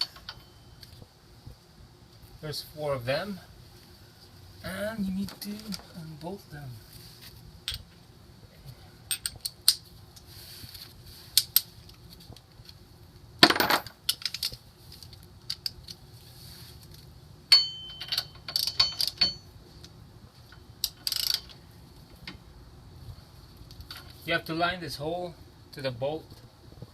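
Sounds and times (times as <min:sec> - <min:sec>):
ringing metal clink: 0:17.5 - 0:19.5.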